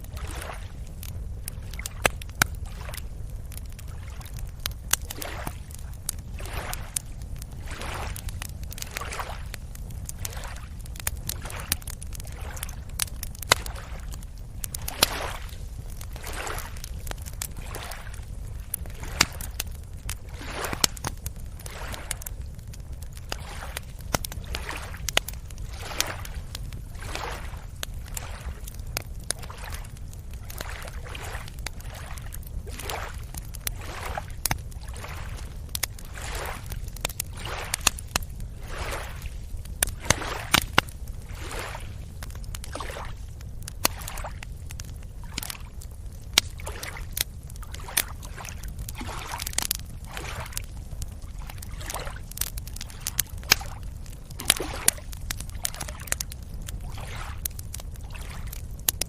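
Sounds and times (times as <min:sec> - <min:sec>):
low rumble of surf: 0:00.0 - 0:55.1
small waves lapping: 0:00.1 - 0:00.8, 0:01.5 - 0:05.8, 0:06.4 - 0:22.5, 0:23.1 - 0:50.7, 0:51.5 - 0:53.8, 0:54.4 - 0:56.1, 0:56.8 - 0:57.4, 0:58.1 - 0:58.4
sharp splashy clicks: 0:53.4 - 0:53.8.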